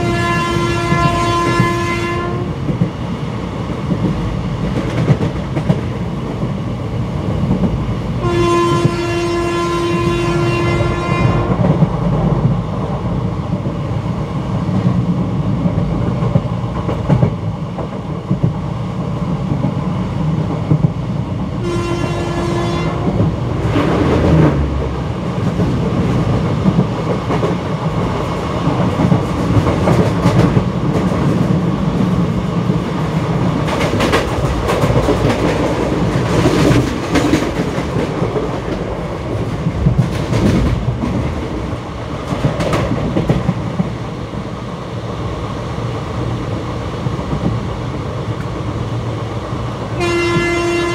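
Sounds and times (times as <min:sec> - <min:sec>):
locomotive horn: 0:00.0 - 0:02.6, 0:08.2 - 0:11.6, 0:21.6 - 0:23.2, 0:50.0 - 0:50.9
train wheels clattering on rails: 0:00.0 - 0:50.9.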